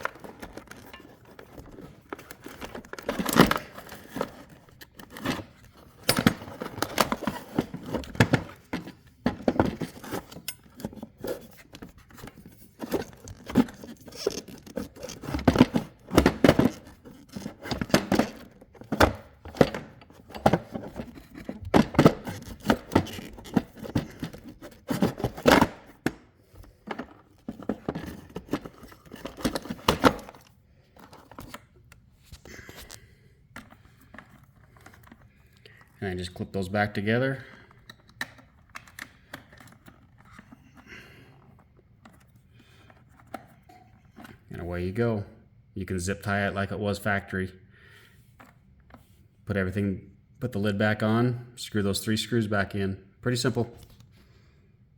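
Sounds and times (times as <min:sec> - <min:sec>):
clicks scrapes and rustling: 0:00.0 - 0:36.0.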